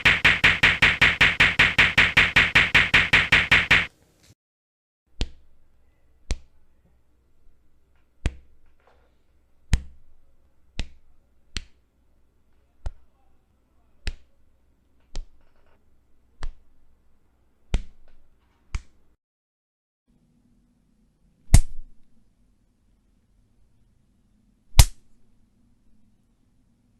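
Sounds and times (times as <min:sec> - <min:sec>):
faint low hum: 0:20.1 - 0:26.9.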